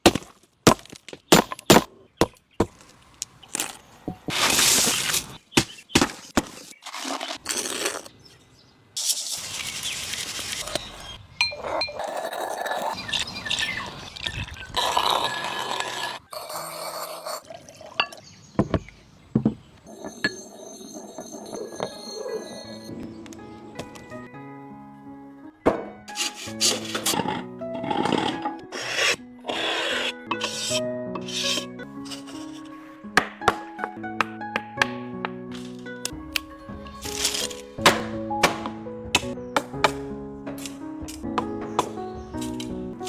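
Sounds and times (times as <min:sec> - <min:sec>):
scraping and rustling: 0:02.8 - 0:05.4, 0:06.0 - 0:08.2, 0:09.0 - 0:13.0, 0:26.1 - 0:32.9, 0:36.9 - 0:37.7.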